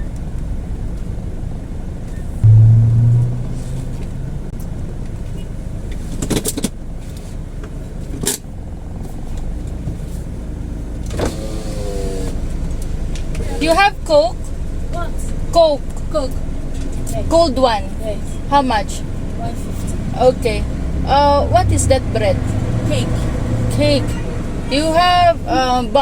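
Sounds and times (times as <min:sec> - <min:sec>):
loud low drone: 0:02.4 - 0:05.3
car engine running: 0:02.4 - 0:10.9.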